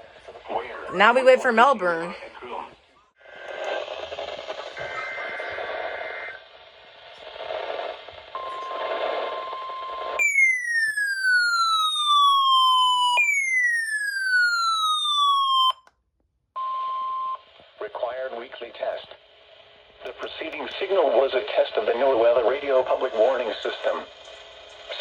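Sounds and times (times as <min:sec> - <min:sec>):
radio static hiss: 0:00.0 - 0:10.2, 0:17.5 - 0:25.0.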